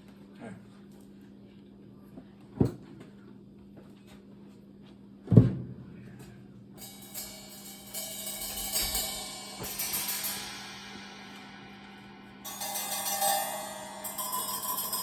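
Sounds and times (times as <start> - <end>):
cymbals struck and ringing: 6.8 - 15.0.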